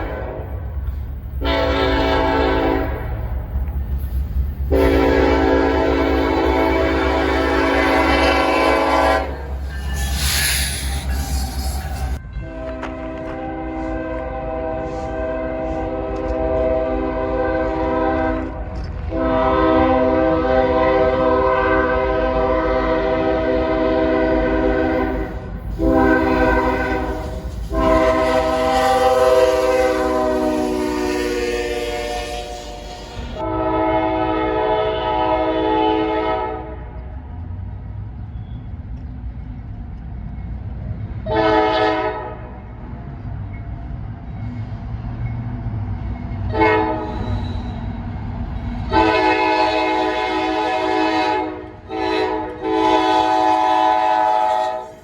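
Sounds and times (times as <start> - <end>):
locomotive air horn blasts: 0.0 - 0.6, 1.4 - 3.2, 4.7 - 37.0, 41.2 - 42.6, 46.5 - 47.7, 48.8 - 55.0
train rumbling: 0.0 - 55.0.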